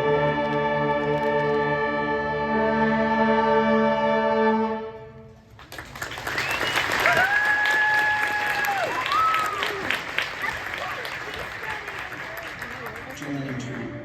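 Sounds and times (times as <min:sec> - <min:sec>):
wind and brass ensemble chord: 0:01.7 - 0:05.3
audience applause and cheering: 0:05.6 - 0:14.0
high whoop: 0:06.4 - 0:10.0.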